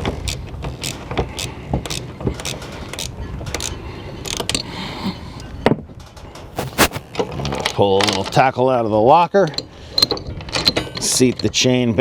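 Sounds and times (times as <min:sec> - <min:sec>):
background noise: 0:06.0 - 0:07.8.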